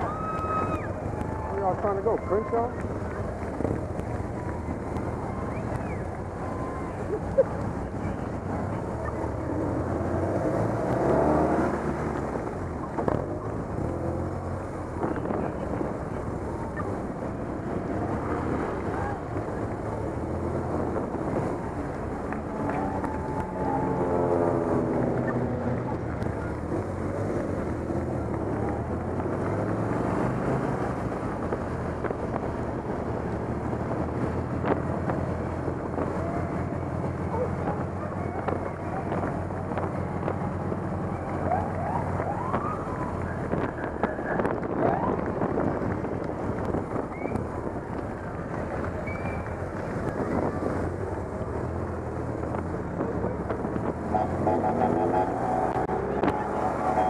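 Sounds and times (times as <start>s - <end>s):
motorcycle engines droning: 0.0s - 57.0s
wavering siren wail: 22.6s - 24.7s, 41.2s - 43.4s, 44.8s - 45.3s.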